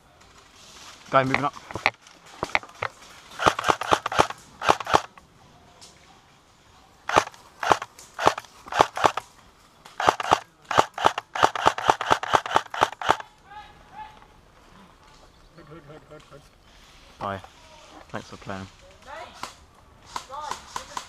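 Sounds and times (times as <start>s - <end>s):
airsoft rifle rapid shots: 3.4s - 5.1s, 7.1s - 9.3s, 10.0s - 13.2s.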